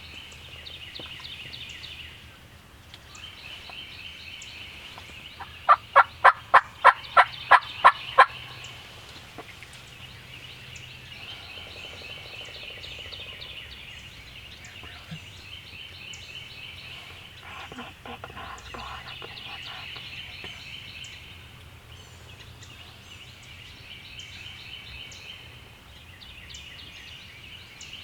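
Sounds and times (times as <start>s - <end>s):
wild turkey yelping: 5.4s - 9.5s, 16.9s - 20.8s.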